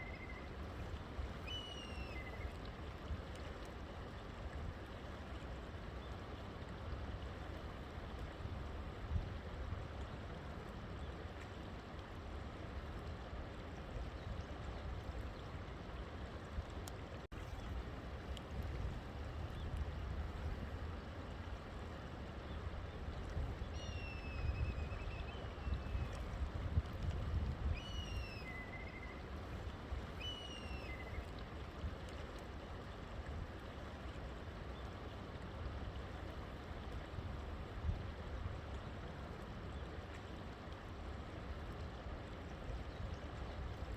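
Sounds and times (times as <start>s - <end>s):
river water flowing: 0.0s - 43.9s
bird whistling: 1.5s - 2.3s.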